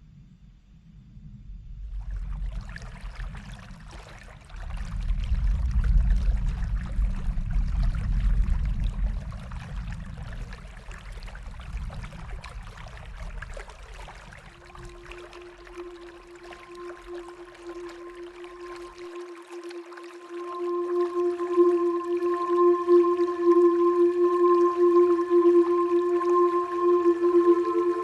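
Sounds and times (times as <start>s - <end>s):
deep low rumble: 0.1s - 4.0s, 4.6s - 18.8s
river water rushing: 14.5s - 28.0s.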